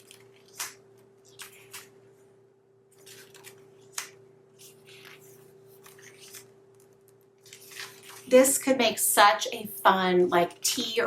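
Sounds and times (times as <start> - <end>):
pages turning and rustling: 0.0 - 2.2, 2.9 - 8.7
faint steady hum: 0.0 - 11.0.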